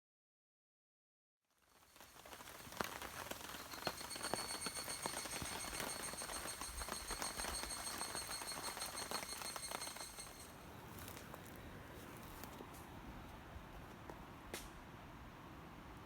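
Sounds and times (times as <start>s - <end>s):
high-pitched insect song: 2.0s - 10.6s
clicks and rustles: 2.0s - 12.8s.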